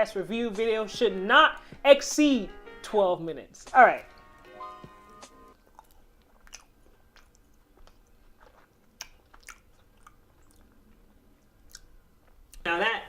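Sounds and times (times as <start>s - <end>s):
chewing donut: 5.5s - 12.6s
wet mouth clicks: 5.6s - 12.6s.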